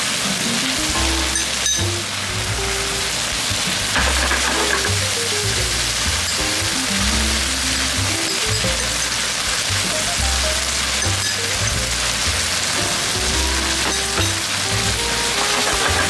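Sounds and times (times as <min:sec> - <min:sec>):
stir-fry sizzling in a pan: 0:00.0 - 0:16.0
background music with bass line: 0:00.8 - 0:16.0.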